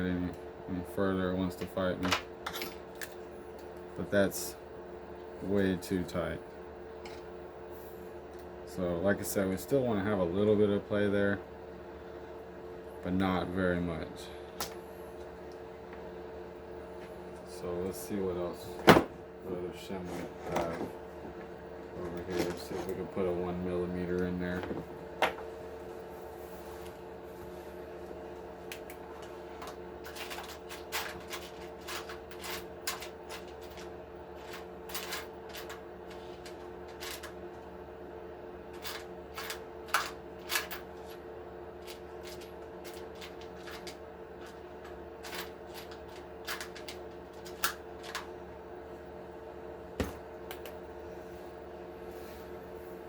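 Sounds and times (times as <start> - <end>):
steady background hum: 0.0 - 53.0.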